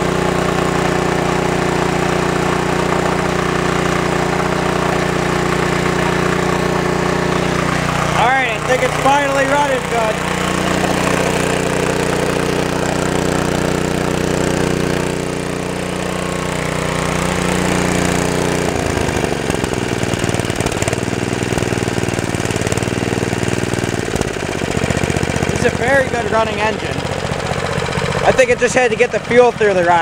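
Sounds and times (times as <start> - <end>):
small snowblower engine running: 0.0 - 30.0.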